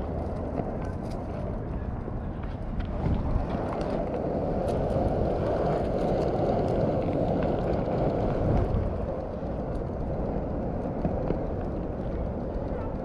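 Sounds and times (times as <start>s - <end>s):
skateboard wheels rolling on pavement: 0.0s - 13.0s.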